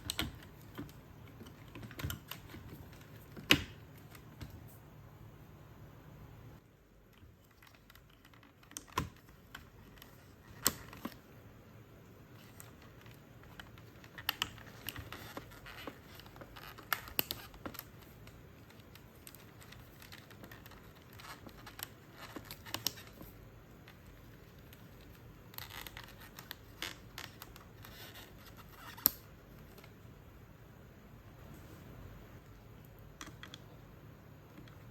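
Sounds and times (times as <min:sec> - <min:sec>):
plastic clicks and knocks: 0:00.0 - 0:04.6.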